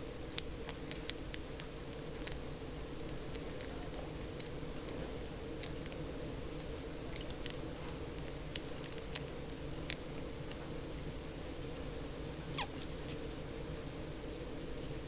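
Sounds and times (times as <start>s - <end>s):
tiny eating clicks: 0.3s - 10.6s.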